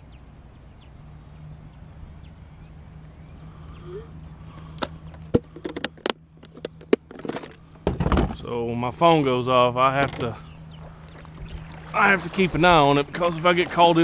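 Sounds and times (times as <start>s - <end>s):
steady low hum: 0.0s - 14.0s
sharp clicks and knocks: 4.8s - 8.4s.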